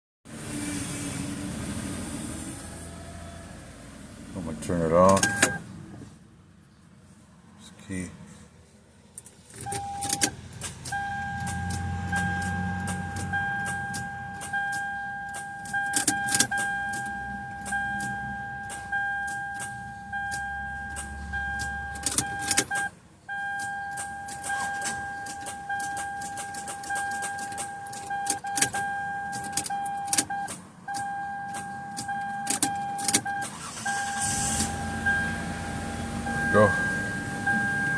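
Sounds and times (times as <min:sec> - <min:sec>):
ignition key clicks: 0:09.2 - 0:34.0
high electronic warning tone: 0:33.8 - 0:37.9.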